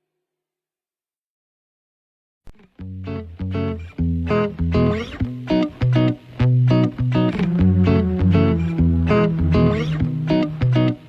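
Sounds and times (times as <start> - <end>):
plucked guitar music: 2.5 - 11.0.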